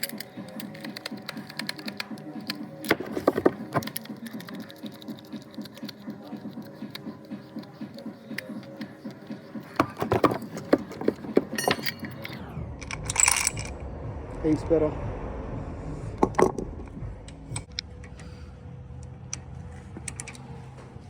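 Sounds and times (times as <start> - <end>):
sharp metal clanks: 9.8 - 12.4.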